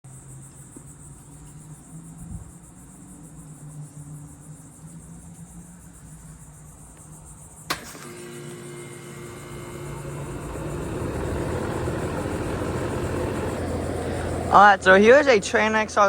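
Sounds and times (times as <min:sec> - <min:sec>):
crickets chirping: 0:00.0 - 0:16.0
heat pump starting click: 0:07.7 - 0:14.9
low hum: 0:07.7 - 0:16.0.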